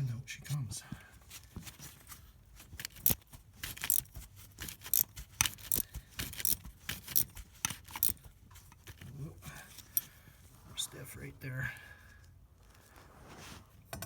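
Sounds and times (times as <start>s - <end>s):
wrench clicking on bolt: 2.8s - 8.2s.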